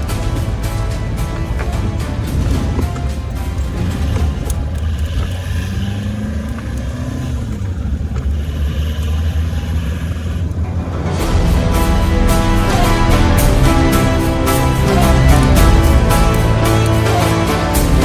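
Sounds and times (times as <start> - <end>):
music: 0.0 - 6.0, 10.7 - 18.0
truck engine and road rumble: 0.0 - 18.0.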